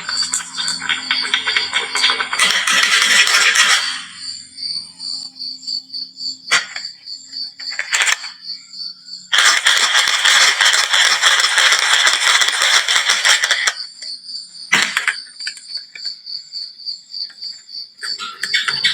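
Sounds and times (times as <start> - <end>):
marbles rattling together: 9.4 - 13.8.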